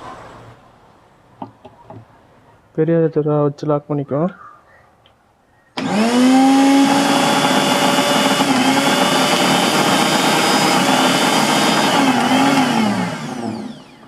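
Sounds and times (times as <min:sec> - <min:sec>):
mixer grinder motor whine: 0:05.8 - 0:14.0.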